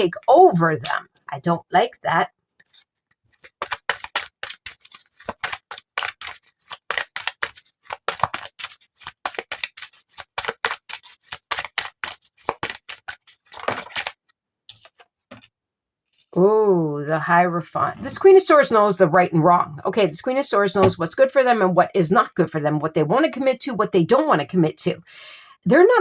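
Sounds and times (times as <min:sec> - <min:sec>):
cards being shuffled: 0:02.6 - 0:15.5.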